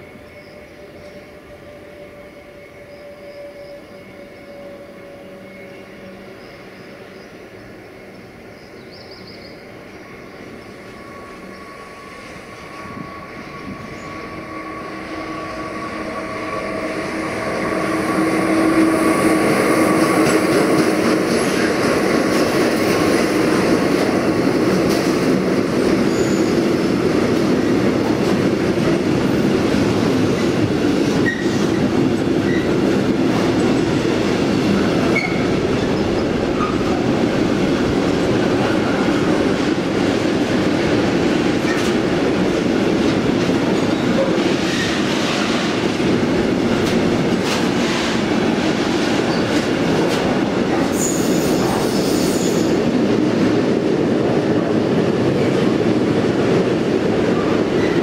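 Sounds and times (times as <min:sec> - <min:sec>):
train wheels squealing: 0:00.0 - 0:21.8, 0:25.9 - 0:26.7, 0:31.1 - 0:32.8, 0:35.1 - 0:37.1, 0:43.8 - 0:45.6, 0:49.2 - 0:49.7, 0:50.8 - 0:52.8, 0:57.3 - 0:58.0
freight train passing: 0:00.0 - 0:58.0.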